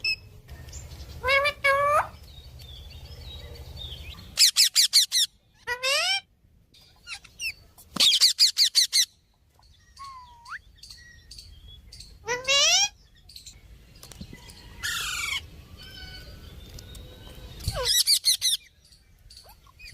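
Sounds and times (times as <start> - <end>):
parrot squawking: 1.2 - 2.2, 4.4 - 6.3, 8.0 - 9.1, 12.2 - 13.0
parrot shrill chirps: 4.4 - 6.3, 7.0 - 9.2, 9.9 - 10.7, 12.2 - 13.0, 17.7 - 18.7.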